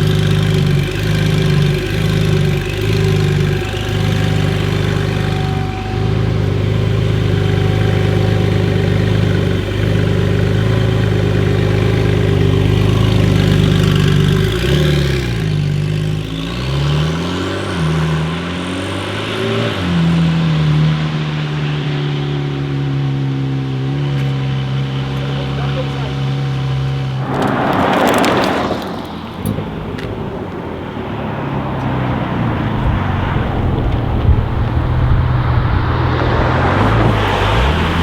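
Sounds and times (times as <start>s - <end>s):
car engine running: 0.0s - 17.6s.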